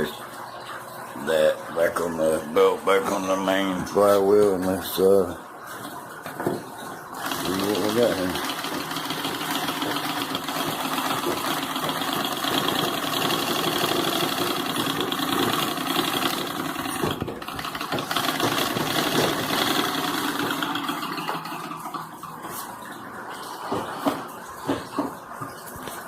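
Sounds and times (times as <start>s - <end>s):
treadle sewing machine clattering: 7.2s - 22.1s.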